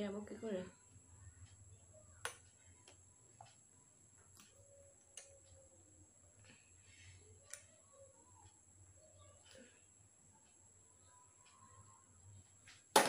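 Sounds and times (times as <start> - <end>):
faint hum: 0.0 - 12.9
faint clicks: 7.2 - 9.8.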